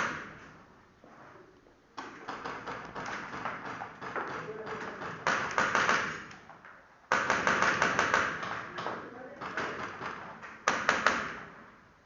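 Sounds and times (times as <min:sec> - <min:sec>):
airsoft guns firing: 0:00.0 - 0:00.4, 0:02.0 - 0:06.4, 0:07.1 - 0:11.6.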